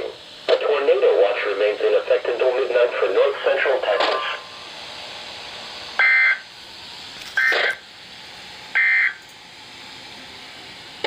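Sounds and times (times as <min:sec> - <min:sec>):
radio hiss: 0:00.0 - 0:04.6, 0:07.4 - 0:07.8.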